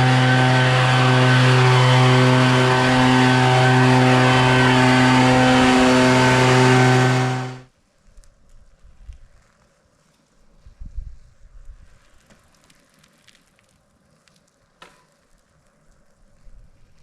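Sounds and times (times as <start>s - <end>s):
small gasoline engine running: 0.0s - 7.7s.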